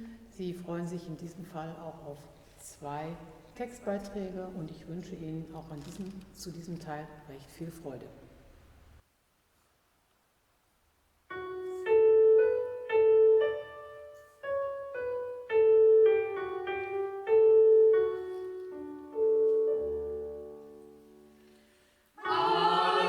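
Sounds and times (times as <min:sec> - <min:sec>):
slow piano melody: 0:11.3 - 0:23.0.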